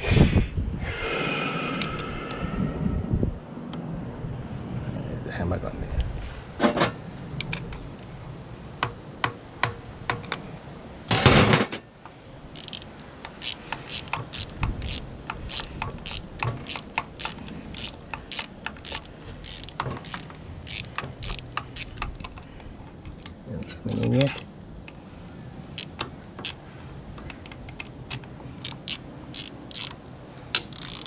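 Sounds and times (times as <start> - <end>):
sharp metallic clicks: 12.5 - 25.0, 25.7 - 26.6, 27.2 - 31.0.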